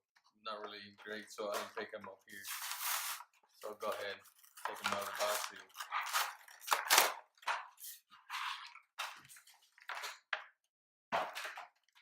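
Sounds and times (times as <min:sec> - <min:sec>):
plastic and cardboard crinkling: 0:00.5 - 0:10.5.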